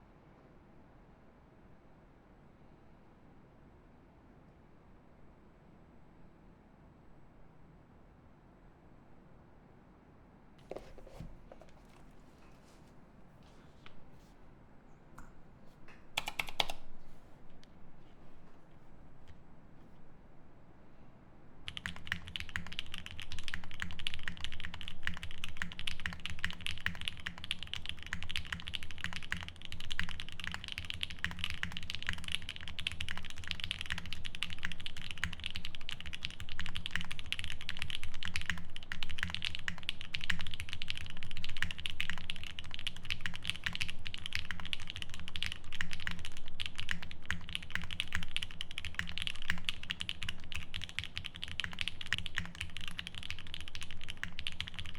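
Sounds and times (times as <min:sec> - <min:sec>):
fast typing on mechanical keyboard: 0:16.2 - 0:16.8, 0:21.7 - 0:54.9.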